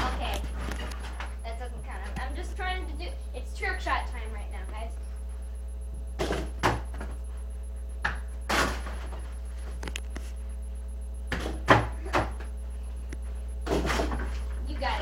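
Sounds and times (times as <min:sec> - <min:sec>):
basketball bouncing and hitting hoop: 0:06.2 - 0:07.2, 0:08.0 - 0:09.3, 0:11.3 - 0:12.6, 0:13.6 - 0:15.0.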